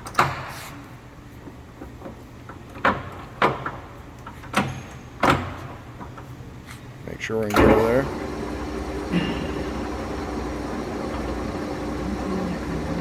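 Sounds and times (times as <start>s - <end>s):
steady low hum: 7.0s - 13.0s
lathe levers clunking: 7.4s - 13.0s.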